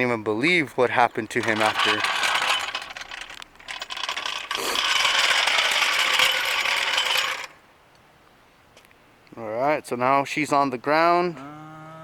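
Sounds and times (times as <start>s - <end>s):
metallic rattling and scraping: 1.0s - 7.6s.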